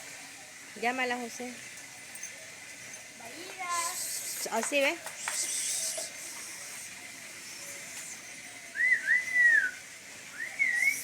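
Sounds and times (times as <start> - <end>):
person whistling: 8.7 - 11.0.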